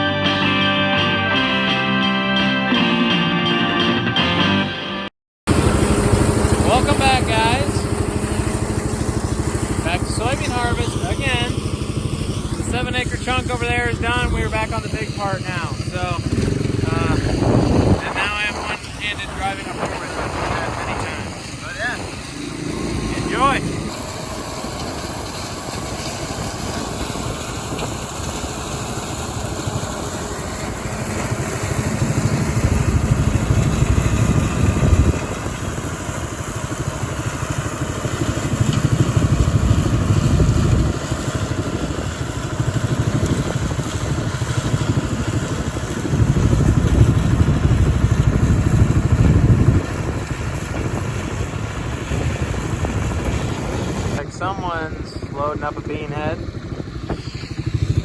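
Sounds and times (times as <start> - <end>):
combine harvester drone: 5.5 - 58.0
deep low rumble: 15.8 - 24.5.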